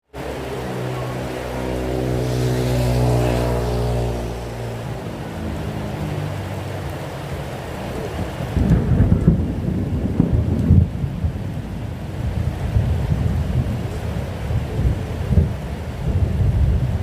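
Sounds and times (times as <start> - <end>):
steady rain falling: 0.0 - 17.0
passing car engine hum: 0.2 - 8.6
low rumble of thunder: 7.8 - 17.0.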